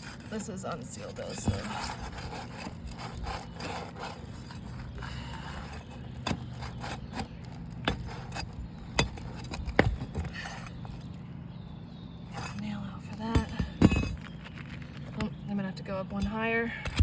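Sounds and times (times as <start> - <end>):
roof shingles scraping: 0.0 - 11.0, 13.6 - 15.5.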